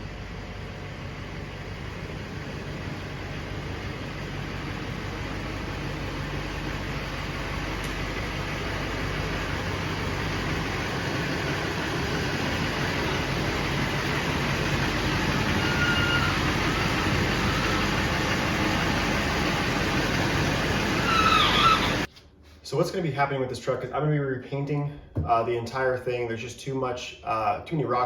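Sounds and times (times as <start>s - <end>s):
diesel truck engine running: 0.0s - 22.1s
short high squeaks: 15.5s - 17.9s, 21.0s - 22.1s.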